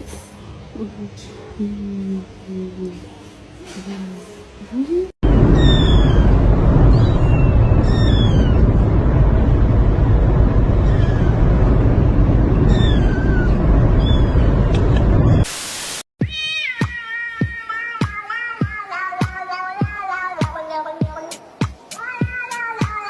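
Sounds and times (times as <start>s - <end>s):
loud low rumble: 5.2s - 15.4s
burst of hiss: 15.4s - 16.0s
kitten mewing: 16.2s - 23.0s
music with a beat: 16.2s - 23.0s.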